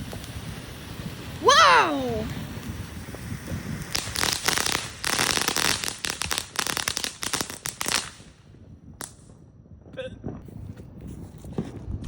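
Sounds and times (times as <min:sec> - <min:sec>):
firework crackling: 0:00.0 - 0:09.3.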